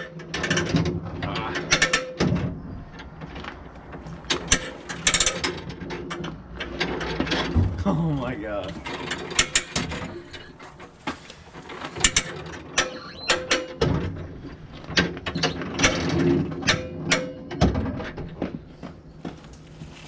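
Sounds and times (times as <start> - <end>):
short squeaks: 12.0 - 13.8, 15.3 - 15.7.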